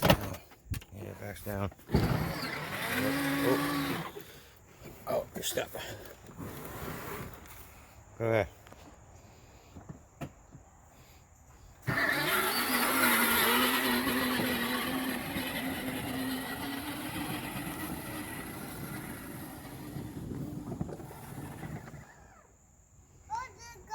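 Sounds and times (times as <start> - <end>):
electric motors whining: 1.8 - 4.4, 11.8 - 22.6.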